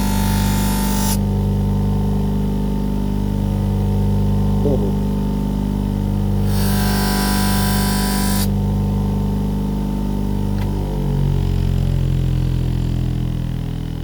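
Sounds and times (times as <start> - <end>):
buffing machine motor humming: 0.0 - 2.2, 5.9 - 13.7.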